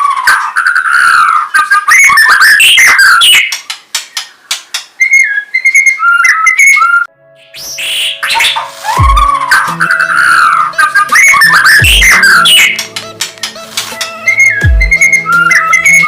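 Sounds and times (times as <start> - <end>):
songbird singing: 0.0 - 16.0
music with held notes: 7.1 - 16.0.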